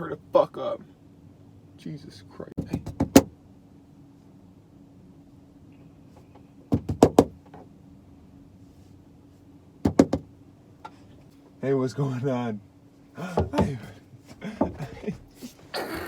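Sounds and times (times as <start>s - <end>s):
steady low hum: 0.0s - 6.7s.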